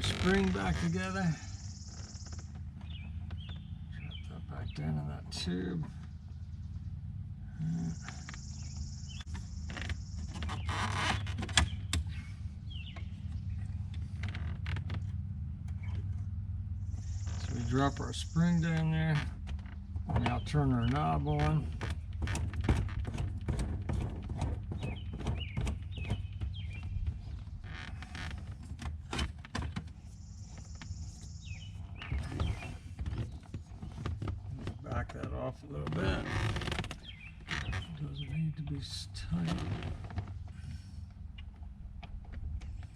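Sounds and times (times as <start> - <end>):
steady low hum: 0.0 - 42.9
clicks knocks and scraping of parts: 8.0 - 16.4, 18.6 - 38.0.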